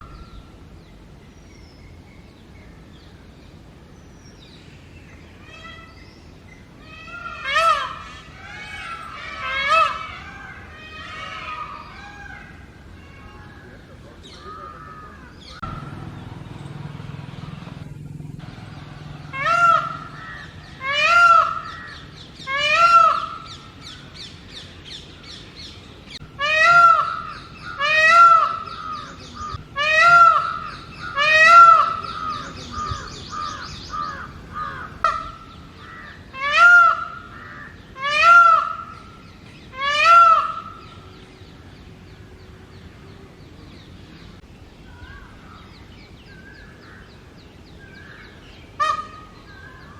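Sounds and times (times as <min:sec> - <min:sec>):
peacock calling: 0:04.7 - 0:49.9.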